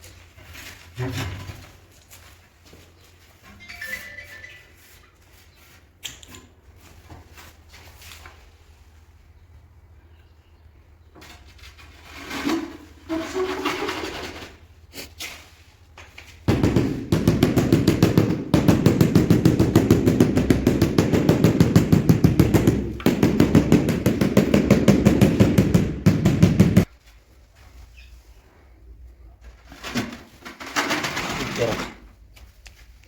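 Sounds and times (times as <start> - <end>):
power tool rattling: 30.0 - 32.0.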